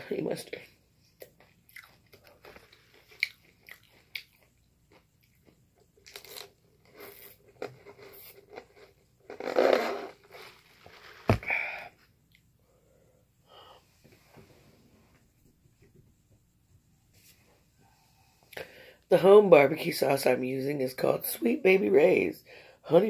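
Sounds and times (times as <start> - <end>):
crunchy chewing: 1.2 - 11.1.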